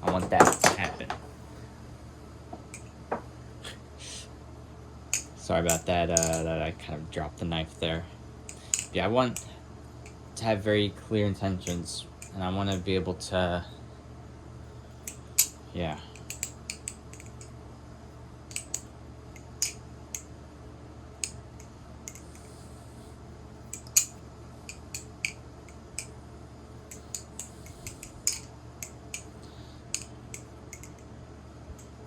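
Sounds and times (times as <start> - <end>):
steady low hum: 0.0 - 32.0
butterfly knife metallic clicks: 26.9 - 29.3, 29.9 - 31.1.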